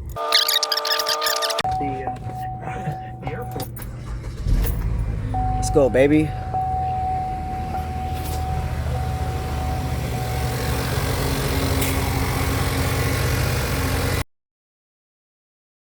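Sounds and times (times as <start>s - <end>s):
steady high tone: 0.2s - 3.5s, 5.4s - 10.8s
car engine idling: 1.6s - 14.2s.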